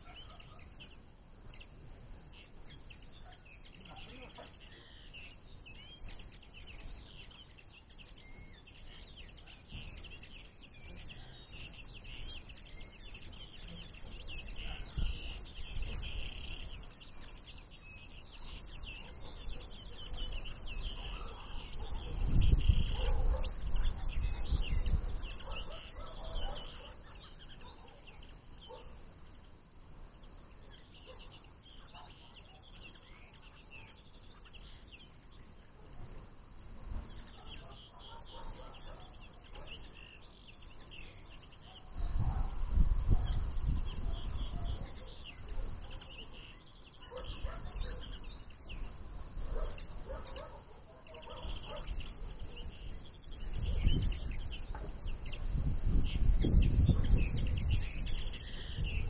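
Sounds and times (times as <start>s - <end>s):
songbirds chirping: 0.0s - 59.0s.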